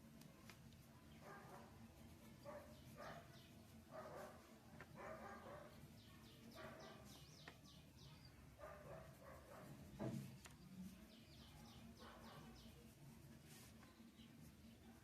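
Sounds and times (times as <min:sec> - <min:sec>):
birds chirping: 0:00.4 - 0:15.0
distant dog barking: 0:01.2 - 0:01.8, 0:02.4 - 0:05.8, 0:06.5 - 0:07.2, 0:08.5 - 0:10.0, 0:11.7 - 0:12.7.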